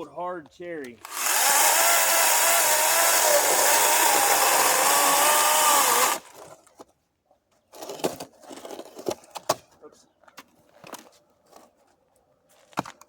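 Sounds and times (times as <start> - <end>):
electric chainsaw cutting log: 1.0 - 6.3.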